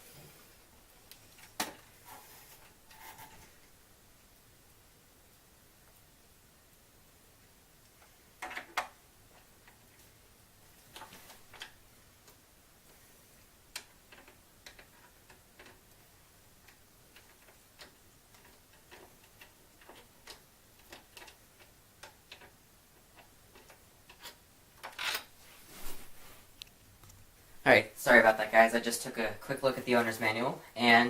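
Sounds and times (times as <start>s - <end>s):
rustling: 22.3s - 28.7s.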